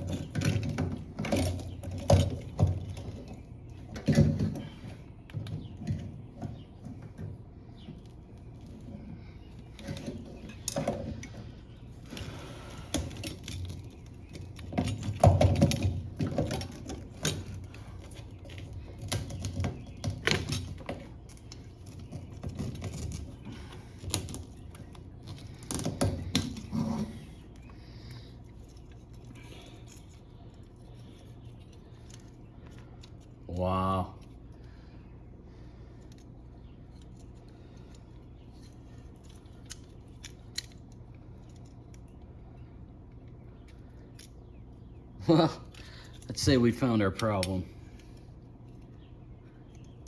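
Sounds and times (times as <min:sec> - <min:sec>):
metal parts clicking and rattling: 0:00.0 - 0:34.8, 0:35.6 - 0:42.4, 0:43.1 - 0:50.0.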